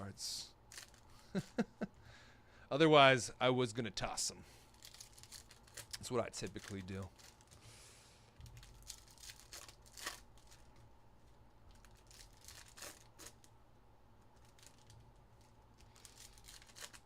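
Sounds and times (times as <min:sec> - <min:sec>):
card packs crinkling: 0:00.7 - 0:01.1, 0:04.7 - 0:07.7, 0:08.4 - 0:10.8, 0:11.7 - 0:13.5, 0:14.3 - 0:17.0.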